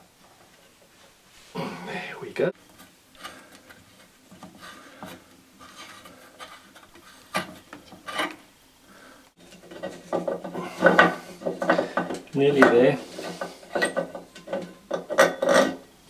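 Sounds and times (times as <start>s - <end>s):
spanner scraping on metal fittings: 3.2s - 8.5s, 9.4s - 15.9s.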